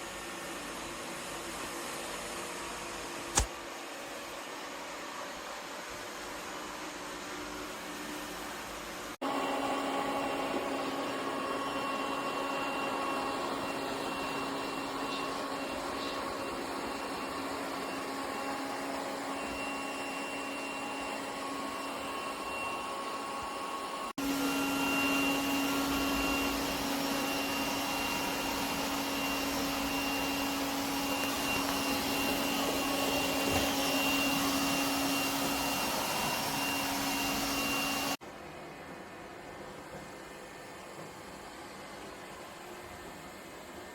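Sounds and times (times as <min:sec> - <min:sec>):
robot vacuum motor hum: 0:24.2 - 0:38.2.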